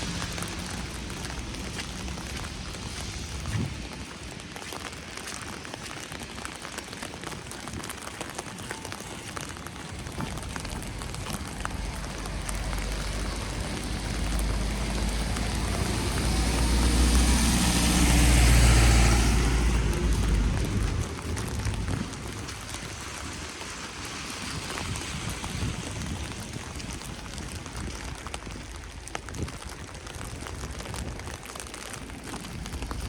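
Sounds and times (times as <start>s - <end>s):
hiss of wet precipitation: 0.0s - 33.0s
car passing by: 10.2s - 26.5s.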